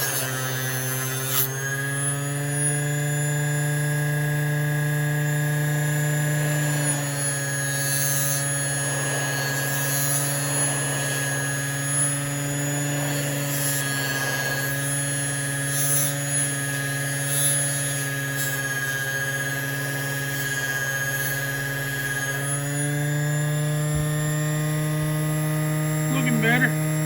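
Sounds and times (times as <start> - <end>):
buffing wheel motor hum: 19.5 - 27.0.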